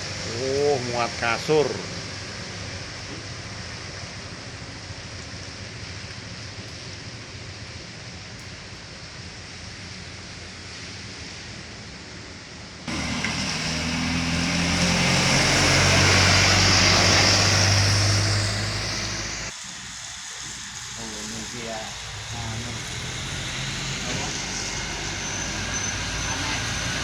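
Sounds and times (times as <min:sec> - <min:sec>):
heavy vehicle engine passing: 0:00.0 - 0:05.0, 0:12.9 - 0:27.0
traffic murmur: 0:00.0 - 0:09.6, 0:12.9 - 0:27.0.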